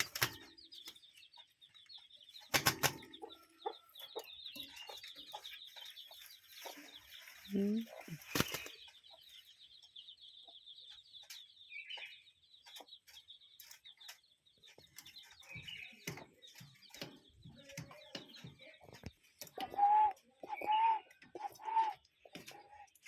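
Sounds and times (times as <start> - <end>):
bird chirps: 0.0 - 23.0
bird trilling: 19.4 - 22.4.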